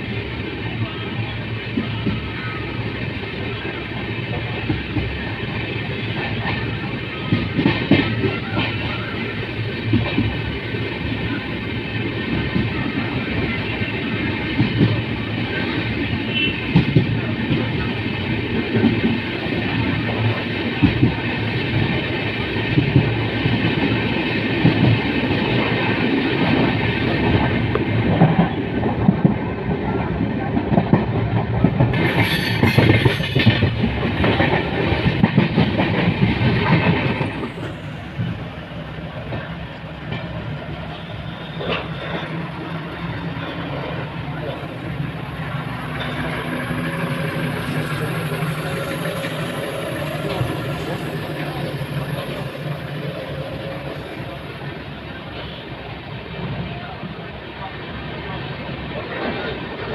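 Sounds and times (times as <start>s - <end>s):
train running on track: 0.0s - 59.9s.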